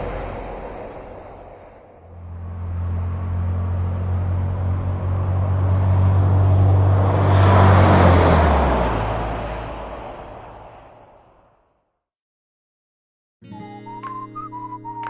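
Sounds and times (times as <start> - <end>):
motor vehicle passing: 0.0 - 11.7.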